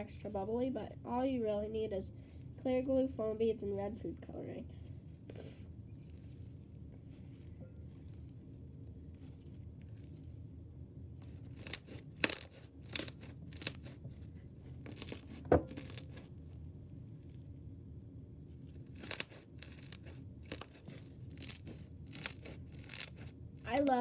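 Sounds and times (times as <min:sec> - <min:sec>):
slime crackling and popping: 0:11.2 - 0:16.3, 0:18.8 - 0:24.0.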